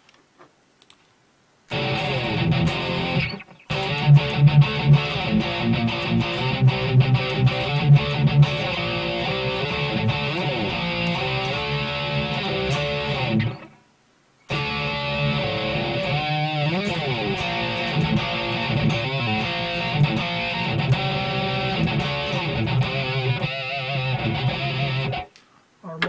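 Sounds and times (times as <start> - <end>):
overdriven electric guitar lines: 1.7 - 13.8, 14.5 - 25.5.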